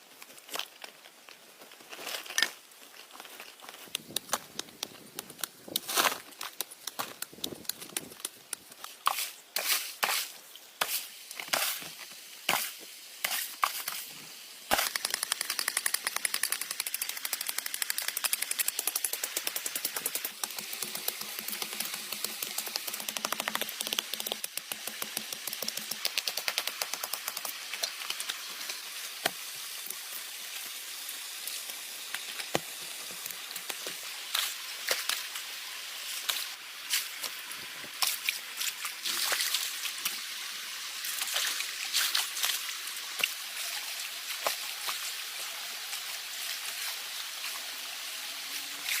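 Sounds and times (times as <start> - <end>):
sharp clicks and crackles: 3.6 - 9.0, 14.7 - 29.4
stream trickling: 34.2 - 49.0.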